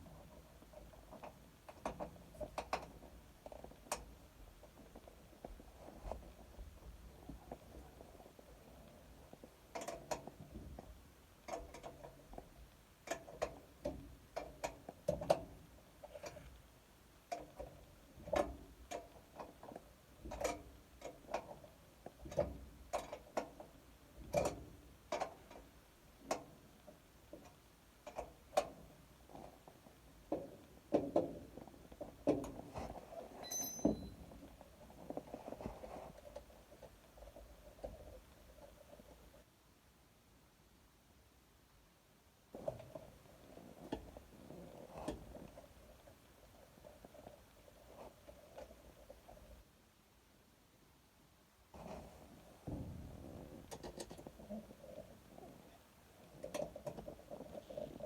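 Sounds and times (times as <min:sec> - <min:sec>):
brief high ring: 0:33.4 - 0:34.2.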